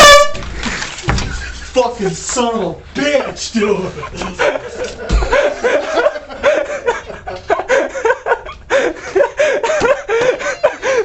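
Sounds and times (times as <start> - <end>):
hearty laughter: 3.9 - 11.0.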